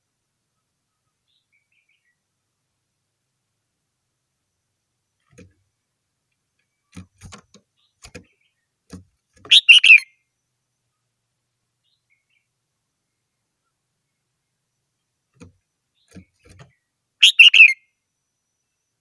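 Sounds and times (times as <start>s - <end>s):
bird song phrase: 0.5s - 2.3s, 9.5s - 11.1s, 11.8s - 15.2s, 15.8s - 17.9s.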